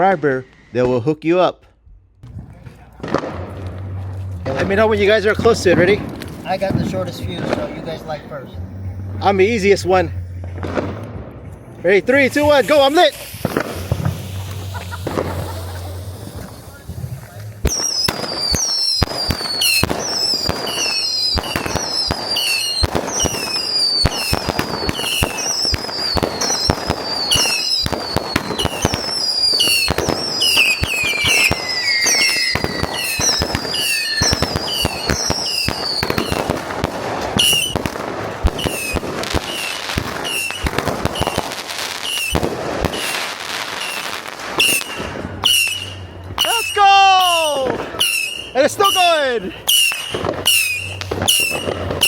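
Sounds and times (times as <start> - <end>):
fireworks crackling and popping: 2.2 - 52.0
short falling whistles: 29.6 - 36.4.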